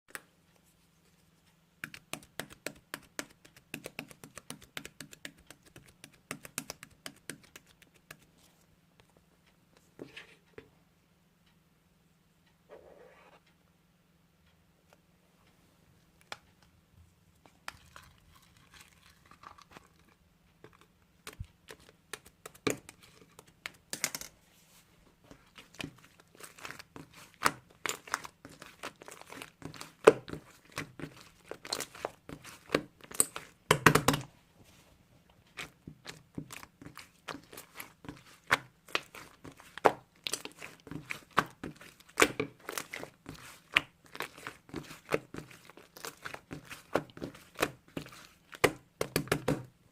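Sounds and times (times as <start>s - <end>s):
crinkling and crackling: 17.3s - 48.9s.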